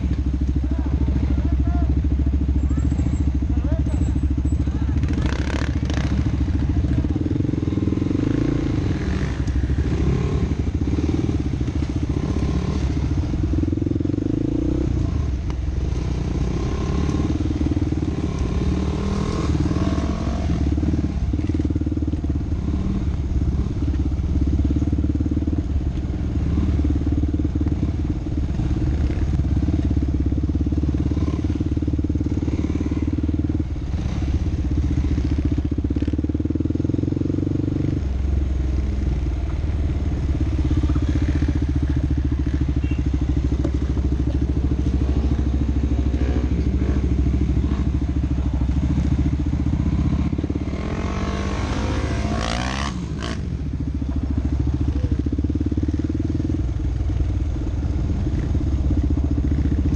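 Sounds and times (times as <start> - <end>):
off-road vehicle engine revving: 5.0 - 21.7, 43.6 - 55.2.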